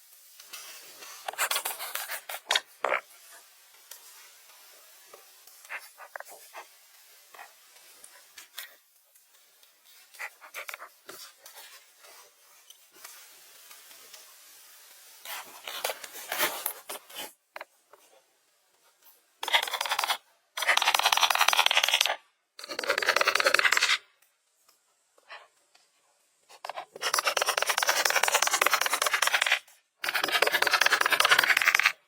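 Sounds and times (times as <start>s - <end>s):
hand tool rasping on material: 19.4s - 24.0s, 26.6s - 32.0s.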